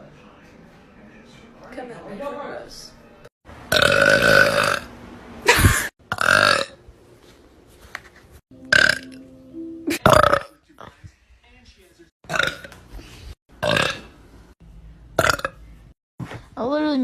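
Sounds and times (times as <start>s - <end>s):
woman burping loudly: 3.7s - 4.9s, 5.5s - 6.8s, 8.7s - 9.2s, 10.0s - 10.6s, 12.3s - 12.7s, 13.6s - 14.1s, 15.2s - 15.6s.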